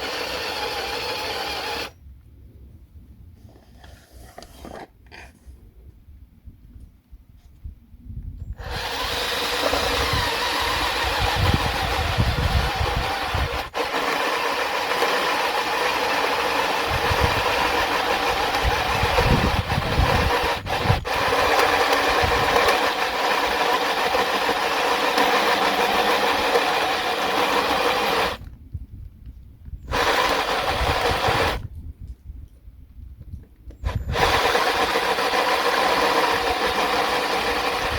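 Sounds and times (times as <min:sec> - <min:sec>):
drill cutting metal plate: 0:00.0 - 0:01.9, 0:08.6 - 0:28.4, 0:29.9 - 0:31.7, 0:33.8 - 0:37.9.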